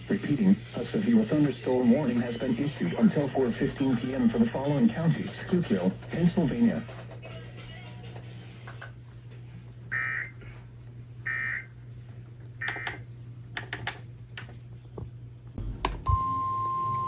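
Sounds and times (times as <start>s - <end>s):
low receiver hum: 0.0s - 17.0s
steady alarm tone: 9.9s - 10.4s, 11.2s - 11.7s
clicks: 12.6s - 14.6s.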